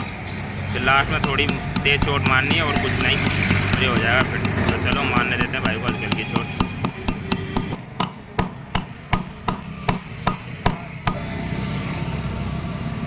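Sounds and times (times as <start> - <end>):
hammer tapping metal: 0.8 - 11.3.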